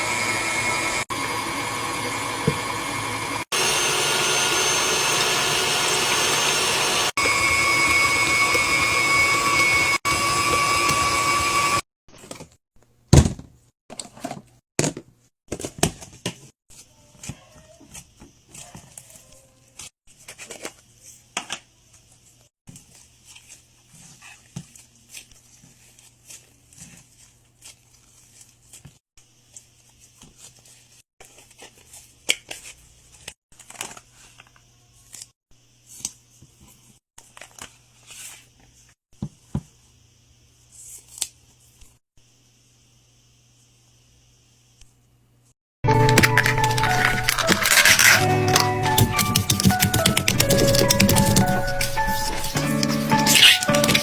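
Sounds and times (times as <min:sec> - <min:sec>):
small electric motor whining: 0:00.0 - 0:11.8.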